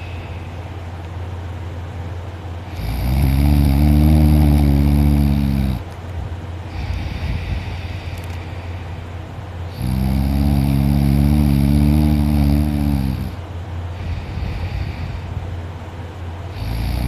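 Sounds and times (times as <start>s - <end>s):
man snoring loudly: 2.7s - 5.8s, 9.7s - 13.4s, 16.5s - 17.0s.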